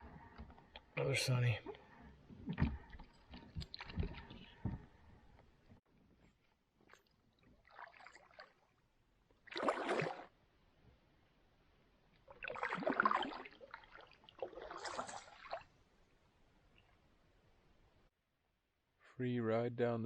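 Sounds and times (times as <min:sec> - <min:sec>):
paddle splashing in water: 0:07.6 - 0:08.7, 0:09.4 - 0:10.3, 0:12.3 - 0:15.7.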